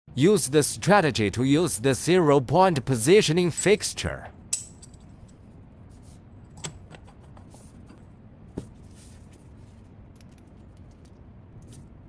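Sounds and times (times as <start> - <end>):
steady low hum: 0.1 - 12.0.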